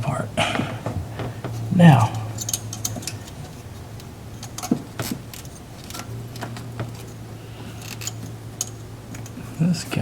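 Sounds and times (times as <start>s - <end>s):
steady low hum: 0.0s - 10.0s
tools and metal parts clicking: 1.5s - 7.2s, 7.8s - 9.4s.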